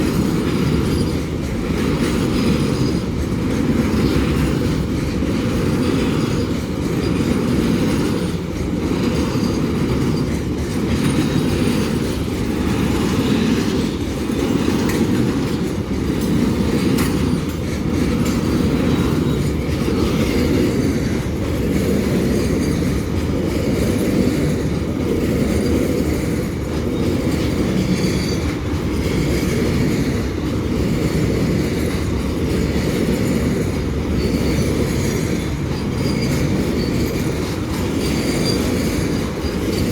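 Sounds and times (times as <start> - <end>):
freight train wheels clattering: 0.0 - 39.9
high wheel squeal: 27.8 - 28.6, 34.2 - 39.9.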